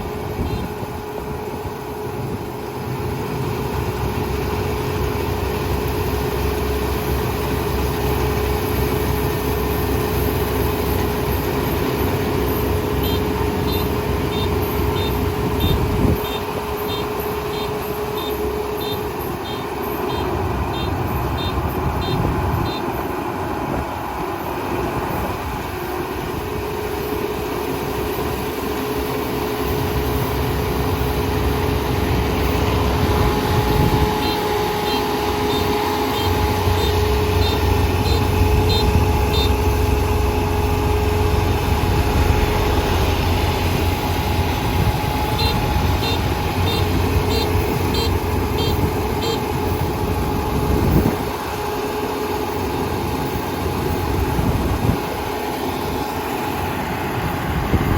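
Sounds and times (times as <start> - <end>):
combine harvester rumbling: 0.0 - 57.9
machine beeper beeping: 13.0 - 23.0, 33.7 - 39.9, 45.2 - 49.6.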